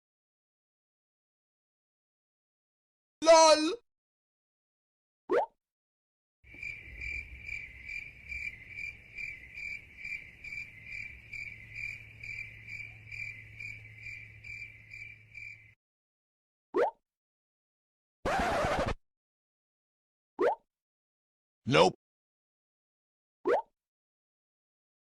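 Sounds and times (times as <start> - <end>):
cricket chirping: 6.5 - 15.8.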